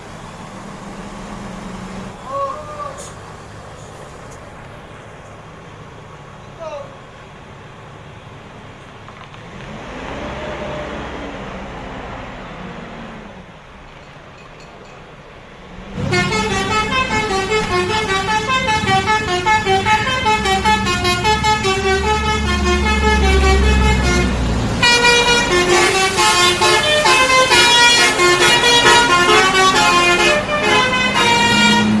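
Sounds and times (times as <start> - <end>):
multi-tone bus horn playing tune: 15.9 - 32.0.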